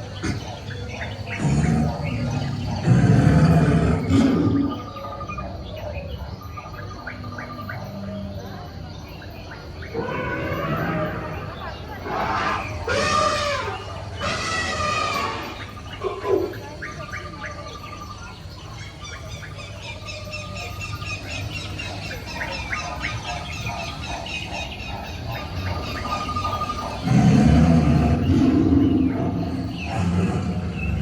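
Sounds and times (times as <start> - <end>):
long pitched animal calls: 9.9 - 18.2.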